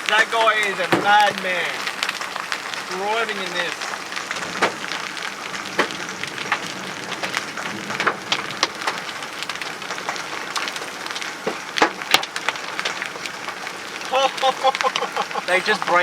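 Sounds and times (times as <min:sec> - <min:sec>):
hailstones striking a car: 0:00.0 - 0:16.0
heavy rain hiss: 0:00.0 - 0:16.0.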